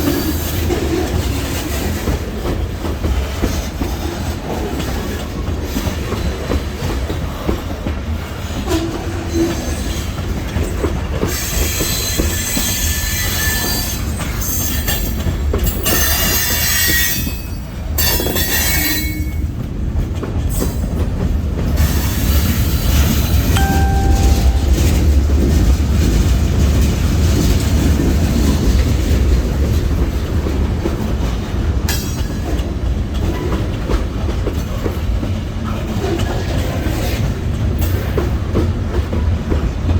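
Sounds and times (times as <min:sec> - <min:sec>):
freight train rumbling: 0:00.0 - 0:39.9
train wheels squealing: 0:09.1 - 0:10.2, 0:11.3 - 0:19.5.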